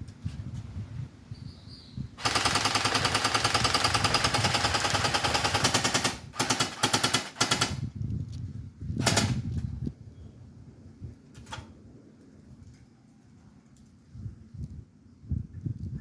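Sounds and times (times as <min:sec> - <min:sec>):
airsoft gun firing bursts: 0:02.2 - 0:07.9, 0:09.0 - 0:09.4.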